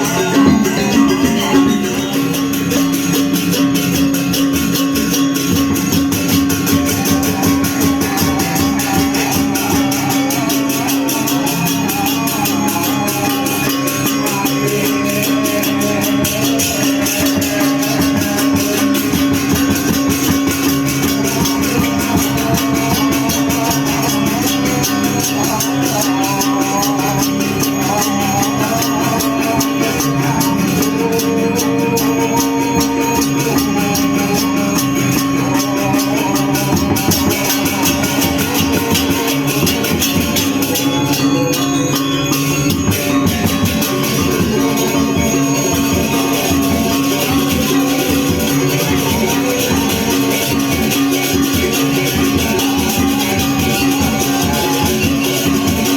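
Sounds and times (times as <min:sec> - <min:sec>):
held low tone: 0:00.0 - 0:04.3
music with fast rhythm: 0:00.0 - 0:55.9.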